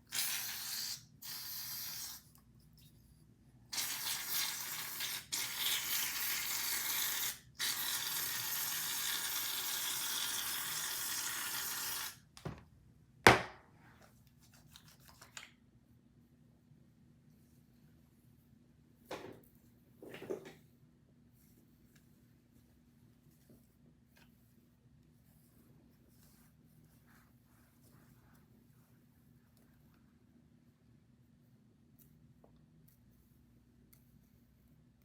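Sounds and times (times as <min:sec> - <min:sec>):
aerosol can spraying: 0:00.1 - 0:02.2.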